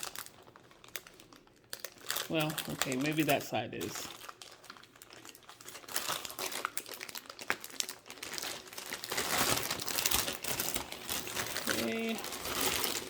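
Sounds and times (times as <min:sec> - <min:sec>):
plastic bag crinkling: 0:00.0 - 0:13.0.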